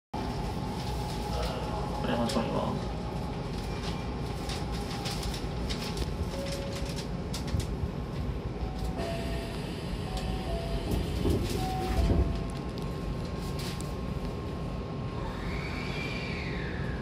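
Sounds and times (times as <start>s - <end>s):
train carriage rumble: 0.2s - 15.5s
train doors thumping shut: 10.8s - 12.5s.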